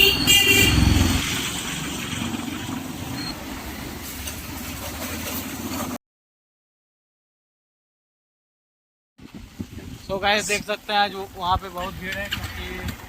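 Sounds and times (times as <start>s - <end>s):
vehicle horn honk: 0.0s - 1.0s
motorcycle engine running: 0.0s - 3.8s.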